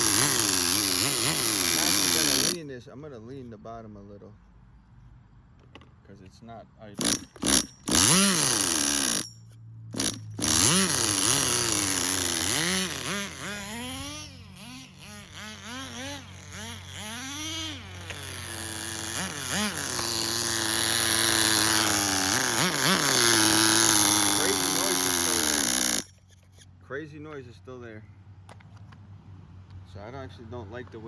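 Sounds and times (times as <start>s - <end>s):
small nitro engine revving: 0.0s - 2.6s, 7.0s - 9.3s, 9.9s - 26.2s.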